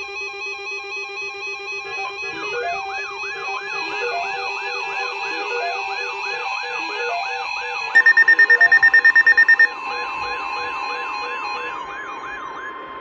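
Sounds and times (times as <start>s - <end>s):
electronic siren sweeping: 7.9s - 9.7s
beeping electronic tune: 8.0s - 9.7s.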